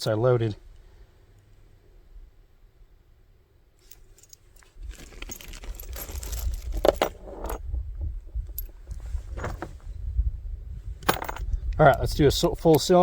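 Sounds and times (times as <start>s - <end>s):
cartridges clinking and clicking: 11.0s - 12.9s.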